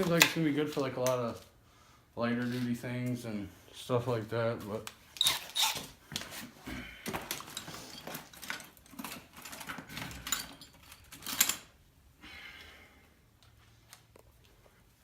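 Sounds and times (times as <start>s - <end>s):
hand tools clicking and clattering: 0.0s - 1.2s, 5.1s - 11.7s.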